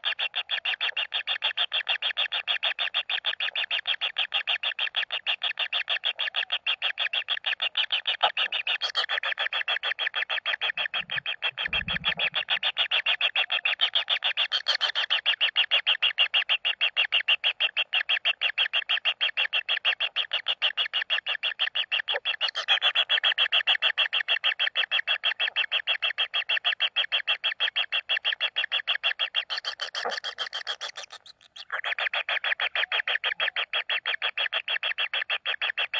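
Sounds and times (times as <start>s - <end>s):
chicks churring rapidly: 0.0s - 35.9s
short low rumble: 11.0s - 12.5s.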